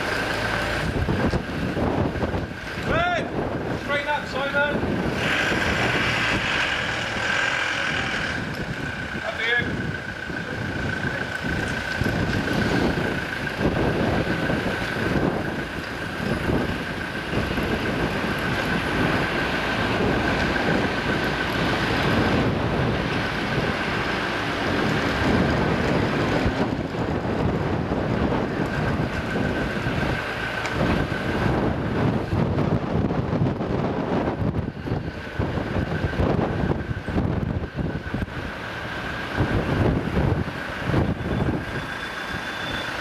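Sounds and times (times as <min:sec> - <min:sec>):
wind buffeting microphone: 0:00.0 - 0:43.0
high-pitched whine: 0:34.6 - 0:43.0.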